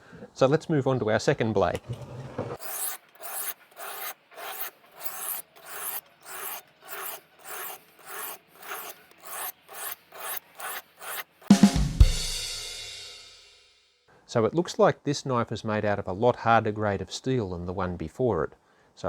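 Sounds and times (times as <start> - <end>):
knife scraping on oilstone: 1.9 - 11.5.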